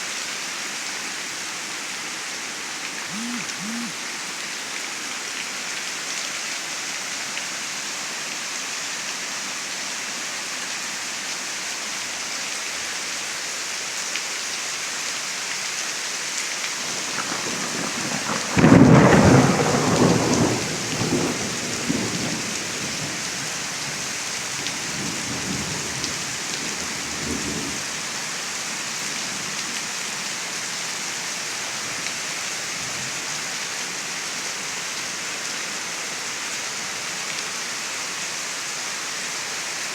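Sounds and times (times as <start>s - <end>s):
steady rain hissing: 0.0s - 39.9s
thunderclap rumbling: 17.1s - 22.2s.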